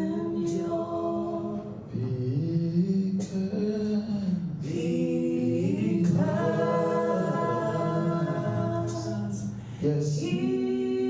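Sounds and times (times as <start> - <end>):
voices singing worship song: 0.0 - 11.0.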